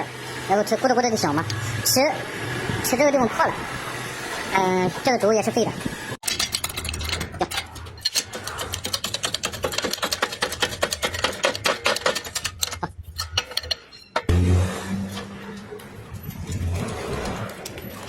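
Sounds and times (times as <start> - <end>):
metal parts clinking: 6.2 - 14.3.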